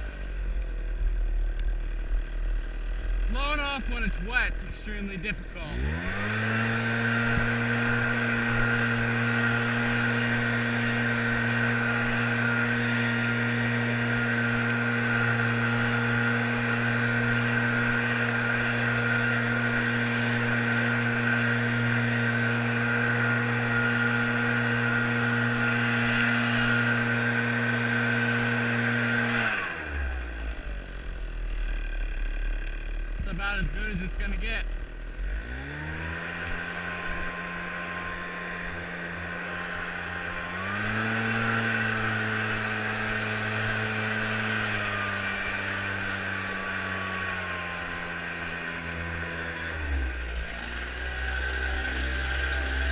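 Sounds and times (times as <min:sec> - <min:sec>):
small gasoline engine running: 0:00.0 - 0:52.9.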